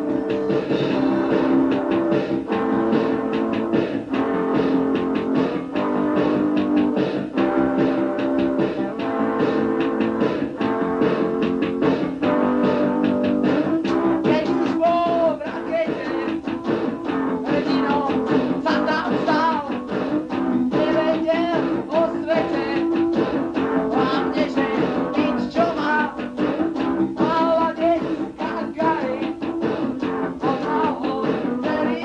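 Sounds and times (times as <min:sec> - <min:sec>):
drums: 0:00.0 - 0:32.0
electric guitar: 0:00.0 - 0:32.0
person singing: 0:12.6 - 0:32.0.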